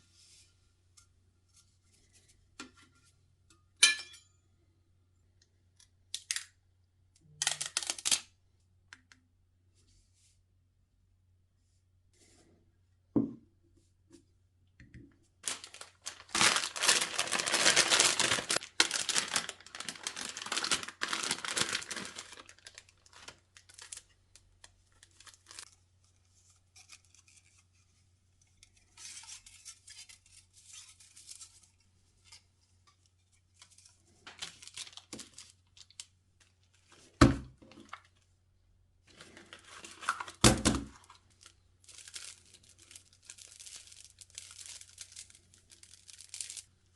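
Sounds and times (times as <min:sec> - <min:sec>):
packaging tearing and rustling: 0:07.4 - 0:08.3, 0:15.4 - 0:24.1, 0:24.9 - 0:25.8, 0:33.7 - 0:36.1, 0:39.1 - 0:46.7.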